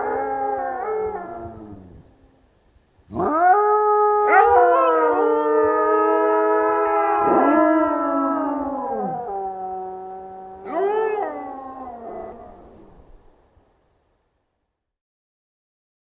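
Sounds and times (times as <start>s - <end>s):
wolves howling: 0.0s - 2.2s, 3.1s - 13.1s.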